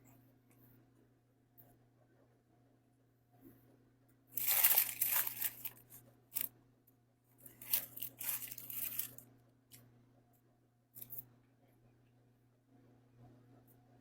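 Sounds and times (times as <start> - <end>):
faint steady hum: 0.0 - 14.0
paper packaging crinkling: 4.4 - 6.5, 7.4 - 9.2.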